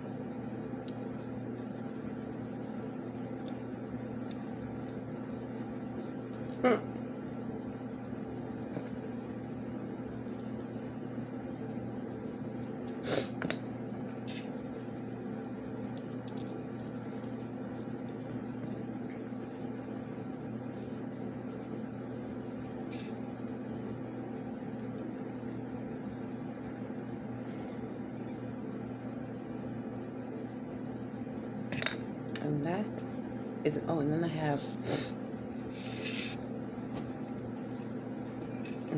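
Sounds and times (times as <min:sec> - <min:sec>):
steady machine hum: 0:00.0 - 0:38.9.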